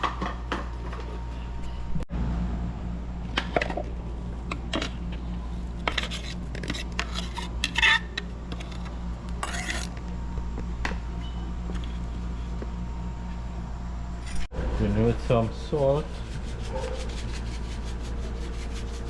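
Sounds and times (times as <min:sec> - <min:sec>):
low hum: 0:00.4 - 0:19.0
utensil scraping: 0:04.6 - 0:10.0, 0:15.3 - 0:19.0.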